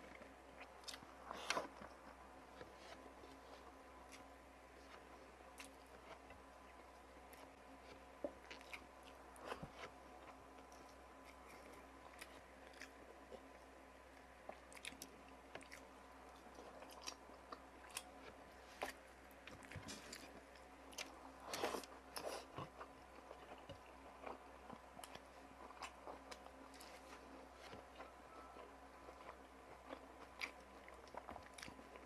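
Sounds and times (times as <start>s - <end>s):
person chewing and biting: 14.5s - 32.0s.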